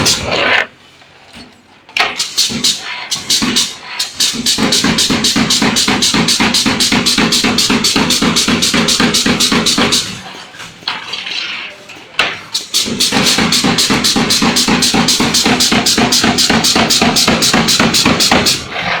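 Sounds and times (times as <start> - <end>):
music with fast percussive beat: 3.5 - 10.2, 12.7 - 18.6.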